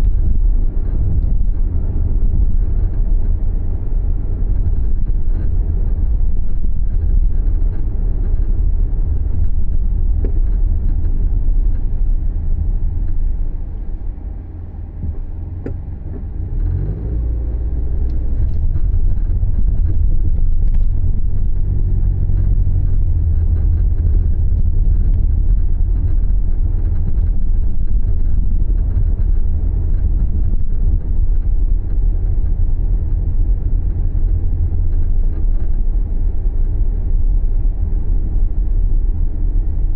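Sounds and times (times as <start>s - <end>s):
car driving rumble: 0.0s - 39.9s.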